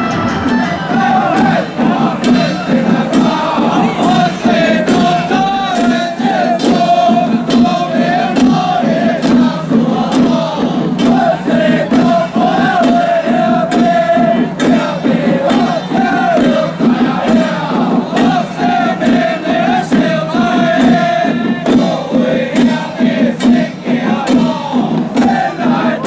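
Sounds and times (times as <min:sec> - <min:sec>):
wavering melody: 0:00.0 - 0:04.5
cymbal strikes: 0:00.0 - 0:25.7.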